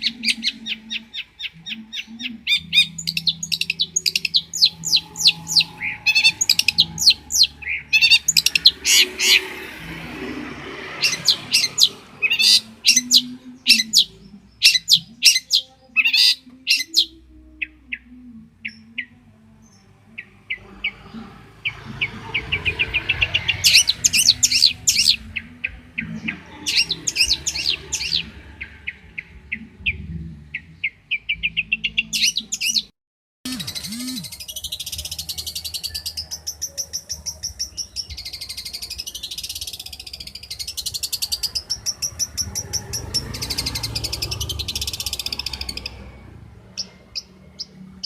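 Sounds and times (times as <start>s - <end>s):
shrike singing: 0.0s - 32.9s, 33.5s - 48.0s.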